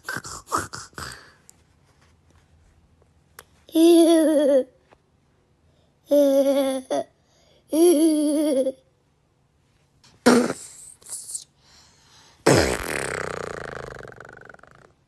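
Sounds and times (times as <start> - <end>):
toddler raspy blowing sound: 0.0 - 1.4, 10.3 - 11.3.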